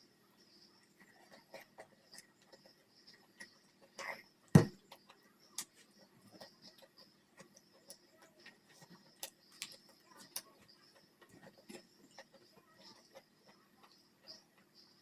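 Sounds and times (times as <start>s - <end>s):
sharp knock: 4.6s - 4.8s.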